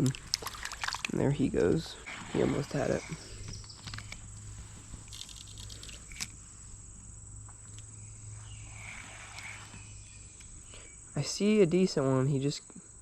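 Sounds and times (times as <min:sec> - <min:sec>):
high-pitched insect drone: 0:00.0 - 0:13.0
faint clicks: 0:03.0 - 0:04.4, 0:08.8 - 0:09.8.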